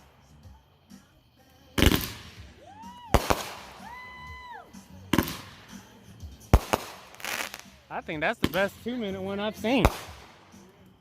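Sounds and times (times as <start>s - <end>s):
firework whistling: 0.0s - 10.8s
firework bangs with crackle: 1.8s - 4.0s, 5.1s - 10.6s.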